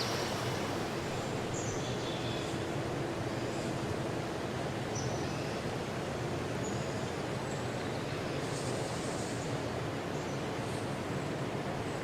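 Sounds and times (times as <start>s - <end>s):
steady rushing noise: 0.0s - 3.2s.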